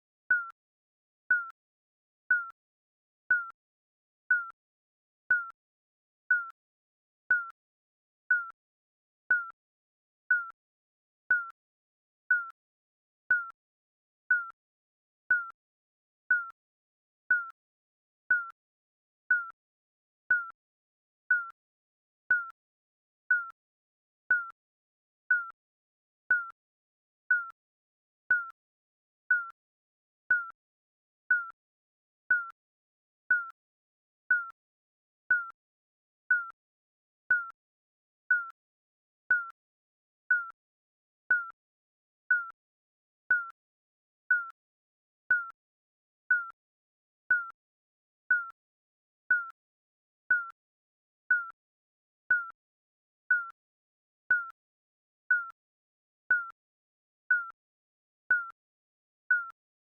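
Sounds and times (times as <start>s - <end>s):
countdown timer beeps: 0.3s - 0.5s, 3.3s - 3.5s, 4.3s - 4.5s, 6.3s - 6.5s, 7.3s - 7.5s, 9.3s - 9.5s, 11.3s - 11.5s, 12.3s - 12.5s, 14.3s - 14.5s, 15.3s - 15.5s, 21.3s - 21.5s, 24.3s - 24.5s, 25.3s - 25.5s, 26.3s - 26.5s, 28.3s - 28.5s, 29.3s - 29.5s, 30.3s - 30.5s, 31.3s - 31.6s, 34.3s - 34.5s, 35.3s - 35.5s, 36.3s - 36.5s, 37.3s - 37.5s, 38.3s - 38.5s, 39.3s - 39.5s, 40.3s - 40.6s, 41.3s - 41.6s, 42.3s - 42.5s, 43.3s - 43.5s, 45.3s - 45.5s, 46.3s - 46.6s, 47.3s - 47.5s, 48.3s - 48.6s, 50.3s - 50.5s, 51.3s - 51.6s, 53.3s - 53.6s, 56.3s - 56.5s, 58.3s - 58.5s.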